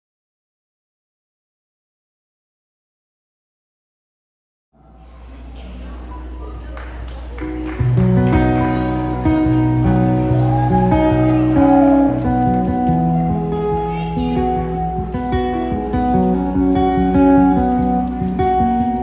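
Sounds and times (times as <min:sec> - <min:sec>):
acoustic guitar strumming: 0:07.3 - 0:19.0.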